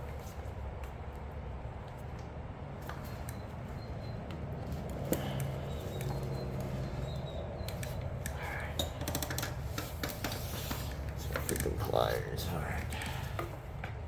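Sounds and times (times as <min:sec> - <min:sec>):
low background hum: 0:00.0 - 0:14.0
hand tools clicking and tapping: 0:04.2 - 0:11.9.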